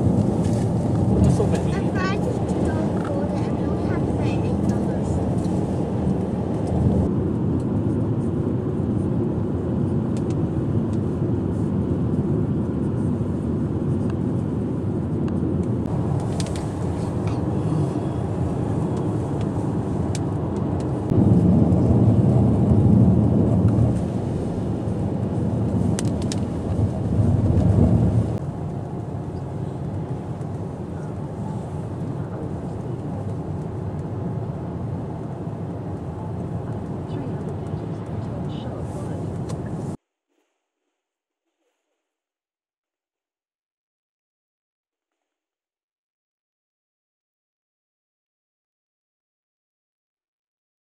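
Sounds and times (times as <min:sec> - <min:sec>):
car rumble inside cabin: 0:00.0 - 0:40.0.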